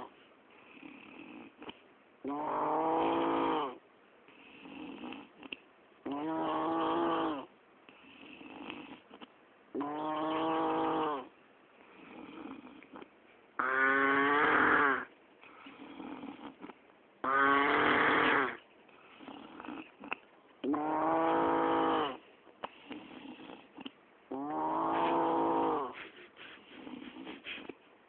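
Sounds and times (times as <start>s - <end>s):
person snoring loudly: 2.2s - 3.8s, 6.0s - 7.5s, 9.8s - 11.3s, 13.6s - 15.1s, 17.2s - 18.6s, 19.2s - 22.2s, 24.3s - 26.0s
quiet breathing out: 15.4s - 16.7s, 18.9s - 20.2s, 24.9s - 27.9s.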